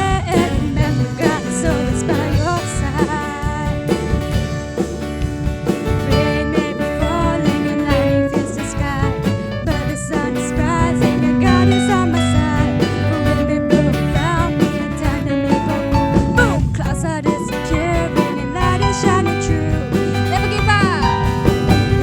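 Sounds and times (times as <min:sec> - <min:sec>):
person singing: 0:00.0 - 0:04.6, 0:06.0 - 0:22.0
worship song with guitar: 0:00.0 - 0:22.0.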